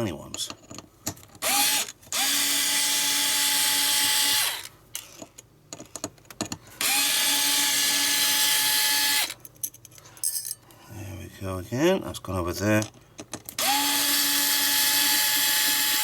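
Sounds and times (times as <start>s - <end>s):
electric screwdriver whine: 1.4s - 4.7s, 6.8s - 9.4s, 13.6s - 16.0s.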